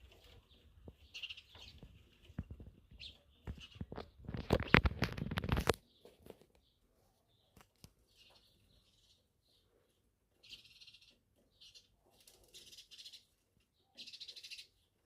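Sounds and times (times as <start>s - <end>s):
sparrows' wings flapping: 0.0s - 6.6s, 10.4s - 13.2s.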